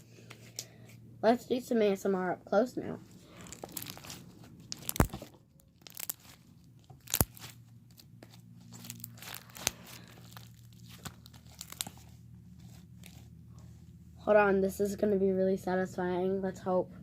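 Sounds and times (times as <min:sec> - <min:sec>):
slime crackling and popping: 0:03.3 - 0:08.0, 0:08.7 - 0:12.1.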